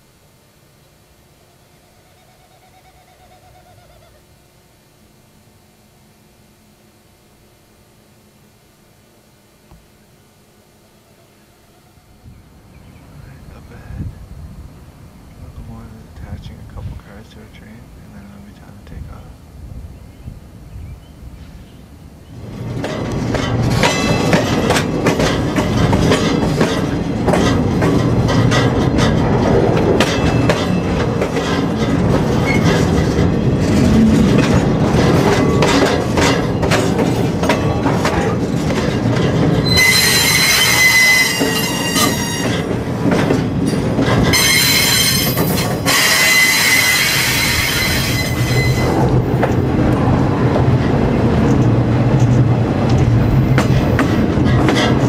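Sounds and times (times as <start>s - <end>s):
wheels squealing on rail: 1.6s - 4.3s, 23.4s - 27.7s, 30.0s - 43.0s, 43.6s - 49.6s
train wheels clattering over rail: 22.3s - 55.0s.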